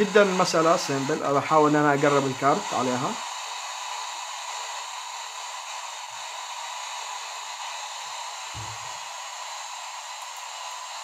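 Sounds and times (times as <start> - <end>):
low thump: 8.6 - 8.9.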